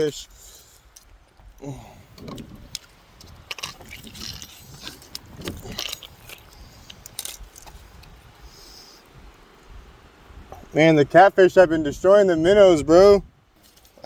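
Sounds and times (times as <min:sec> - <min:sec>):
fishing tackle clicks and rattles: 0:02.1 - 0:08.2.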